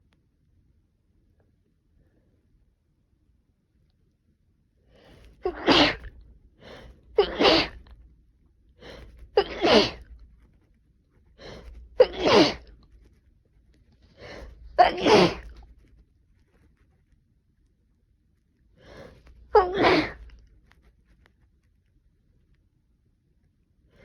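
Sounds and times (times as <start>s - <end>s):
person sneezing: 5.4s - 6.1s, 6.7s - 7.9s, 8.9s - 10.1s, 11.5s - 12.8s, 14.2s - 15.6s, 18.9s - 20.4s.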